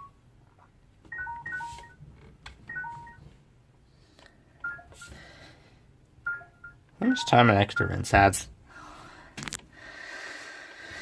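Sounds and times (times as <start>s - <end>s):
washing machine control panel beeps: 1.1s - 2.0s, 2.7s - 3.2s, 4.6s - 5.1s, 6.2s - 8.3s.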